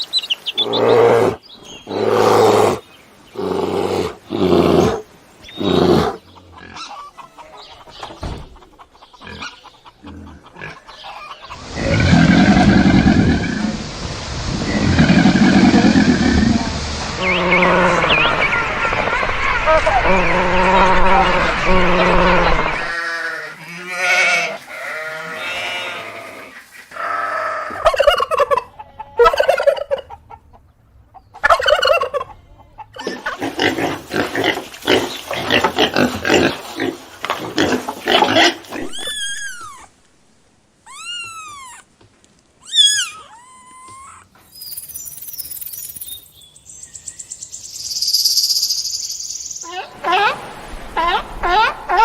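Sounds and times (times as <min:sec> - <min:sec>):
poultry clucking and gobbling: 0:05.4 - 0:13.5, 0:26.3 - 0:39.2, 0:49.6 - 0:52.0
high downward-sweeping chirps: 0:44.4 - 0:52.0.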